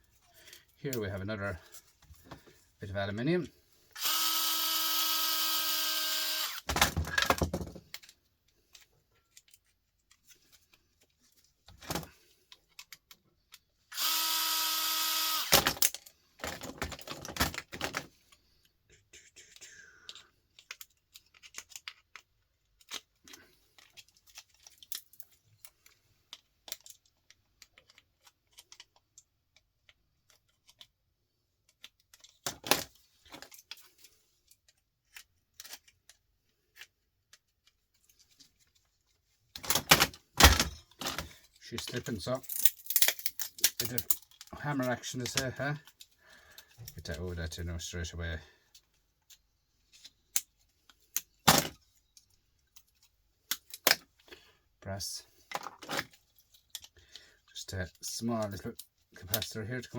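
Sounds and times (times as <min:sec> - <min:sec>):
power drill running: 0:04.0 - 0:06.7, 0:13.9 - 0:15.7
small clicks and rattles: 0:20.0 - 0:47.1
parts clattering: 0:39.5 - 0:47.0.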